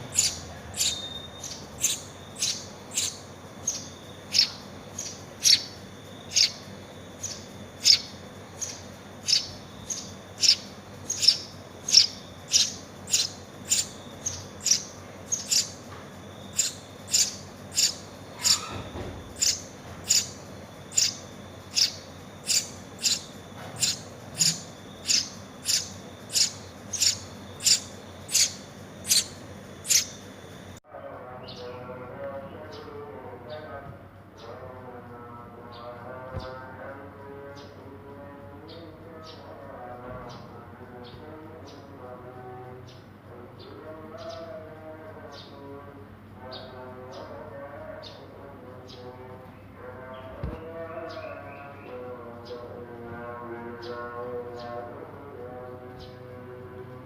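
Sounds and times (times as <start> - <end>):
nestling begging chirps: 0.0 - 30.8.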